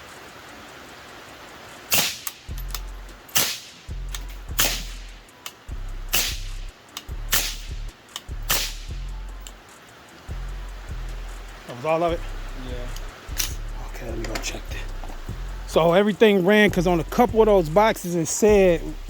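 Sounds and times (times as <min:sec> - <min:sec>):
rifle shots: 0:01.9 - 0:02.5, 0:03.3 - 0:03.9, 0:04.6 - 0:05.2, 0:06.1 - 0:06.6, 0:07.3 - 0:07.8, 0:08.5 - 0:09.0.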